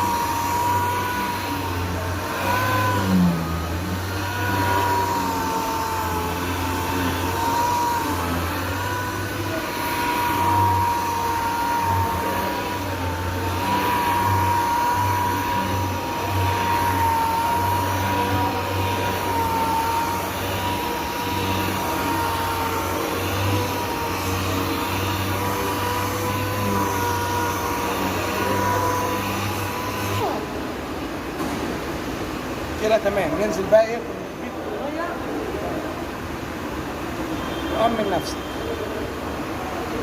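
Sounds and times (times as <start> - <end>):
power sander whining: 0.0 - 31.2.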